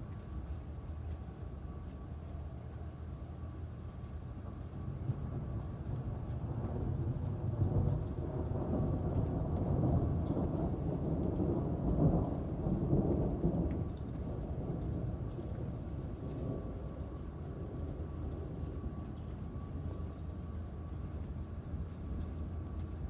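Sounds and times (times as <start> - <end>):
steady rain: 0.0 - 23.0
thunder rumbling: 4.7 - 23.0.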